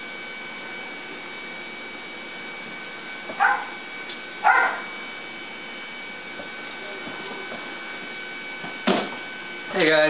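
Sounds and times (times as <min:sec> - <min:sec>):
electrical hum: 0:00.0 - 0:10.0
dog barking: 0:03.4 - 0:03.8, 0:04.4 - 0:04.9.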